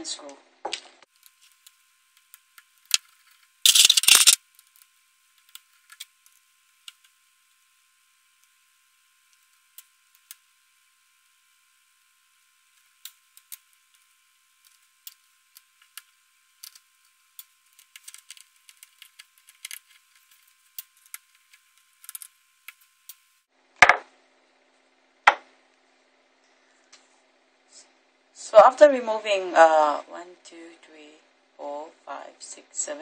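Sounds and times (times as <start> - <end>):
screwdriver clicks and ticks: 3.7 - 4.4.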